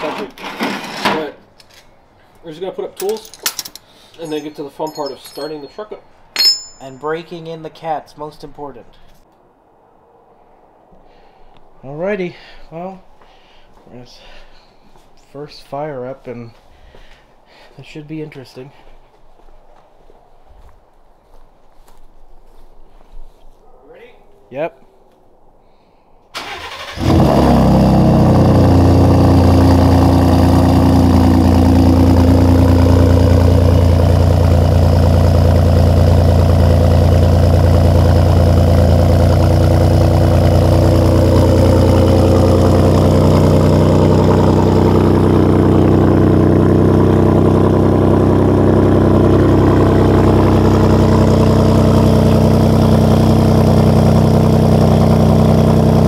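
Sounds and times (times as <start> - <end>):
engine cranking and starting: 26.4 - 27.7
engine idling: 26.4 - 56.0.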